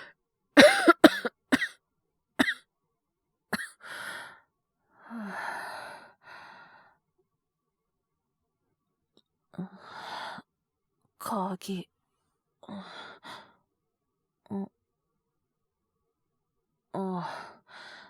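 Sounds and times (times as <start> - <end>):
man coughing: 0.6 - 1.7.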